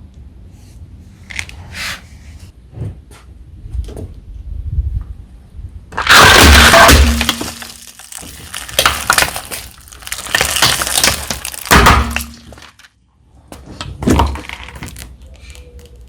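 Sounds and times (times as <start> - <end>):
tyre crushing brittle objects: 5.9 - 13.0, 13.8 - 16.0.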